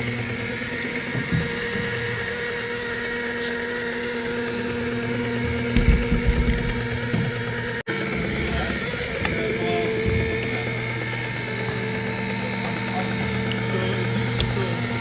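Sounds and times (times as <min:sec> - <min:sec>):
motor humming: 0:00.0 - 0:15.0
low thumps: 0:05.6 - 0:07.4.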